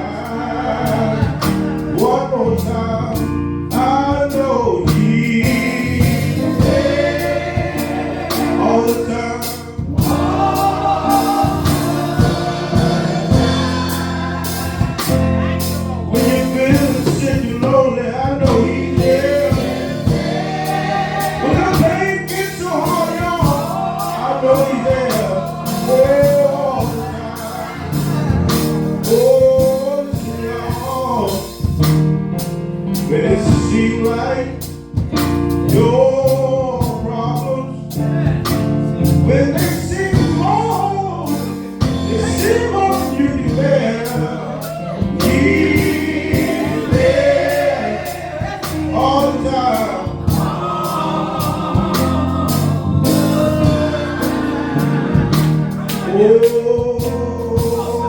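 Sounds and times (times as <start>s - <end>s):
melismatic gospel singing: 0.0s - 58.0s
band with bass and drums: 0.8s - 58.0s
backing voices: 5.5s - 31.2s, 42.0s - 58.0s.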